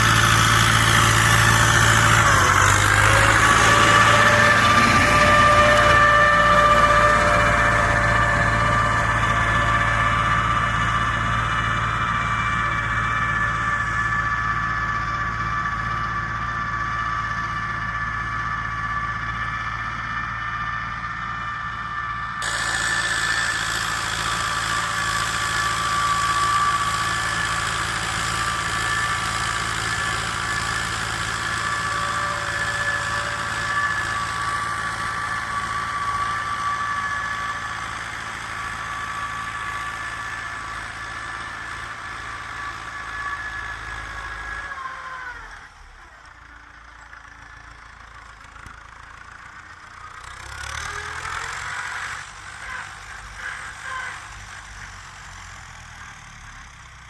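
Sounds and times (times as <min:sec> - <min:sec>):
high whine: 0:00.0 - 0:17.0, 0:19.8 - 0:39.5
tractor engine running: 0:00.0 - 0:57.0.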